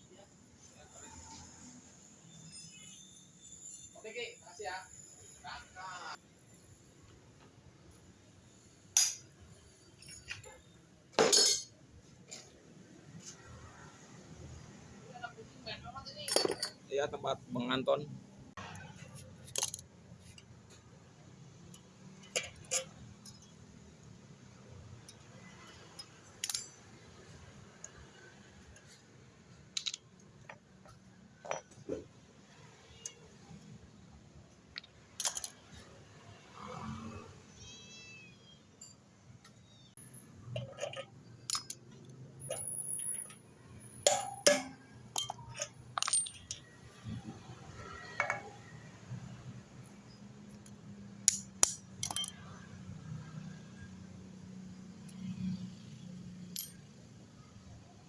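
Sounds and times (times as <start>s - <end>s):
small metal parts clinking: 8.4s - 11.7s, 16.2s - 16.9s, 19.2s - 20.6s, 21.7s - 24.1s, 24.9s - 29.0s, 29.7s - 31.8s, 34.7s - 35.9s, 39.6s - 48.8s, 50.1s - 52.7s, 56.5s - 57.0s.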